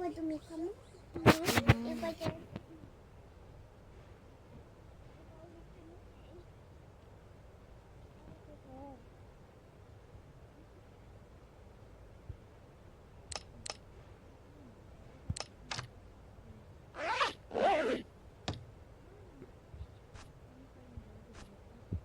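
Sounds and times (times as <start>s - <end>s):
zipper pulls: 17.0s - 18.0s.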